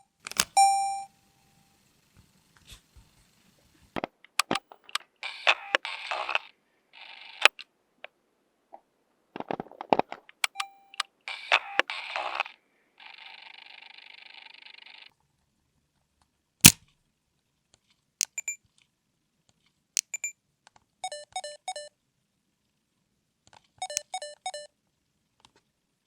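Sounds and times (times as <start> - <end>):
electronic beeps: 0.0 - 1.1, 10.5 - 11.0, 18.3 - 18.6, 20.1 - 20.3
camcorder mechanism clicks: 0.2 - 0.7, 4.4 - 6.4, 10.4 - 12.4.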